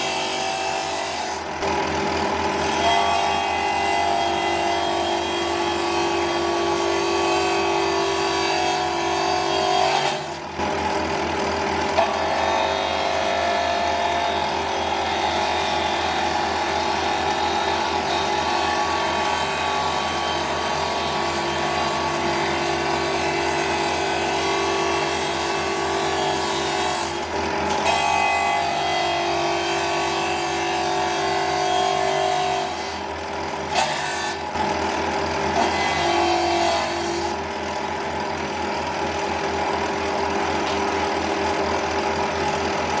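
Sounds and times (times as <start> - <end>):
electric sander grinding: 0.0 - 43.0
electric sander motor running: 10.4 - 26.4.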